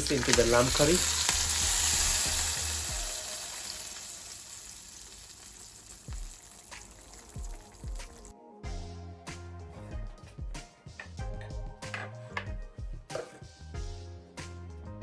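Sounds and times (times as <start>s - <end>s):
spices sizzling in hot oil: 0.0s - 8.3s.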